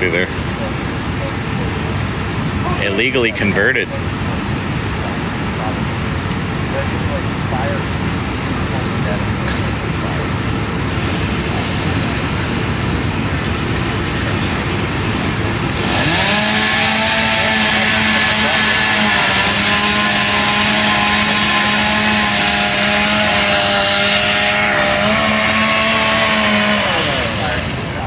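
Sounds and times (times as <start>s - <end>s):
hissing cutting noise: 8.7s - 28.0s
power saw engine revving: 9.5s - 28.0s.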